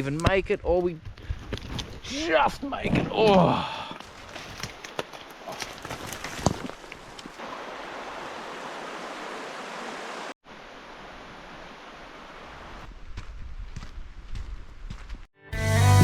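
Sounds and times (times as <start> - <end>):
flowing creek water: 3.6 - 12.8.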